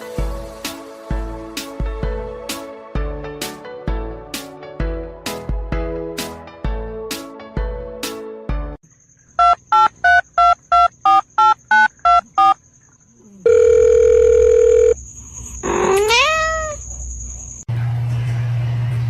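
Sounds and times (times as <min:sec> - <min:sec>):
short electronic beeps: 0:09.4 - 0:12.6
steady beep tone: 0:09.4 - 0:12.6.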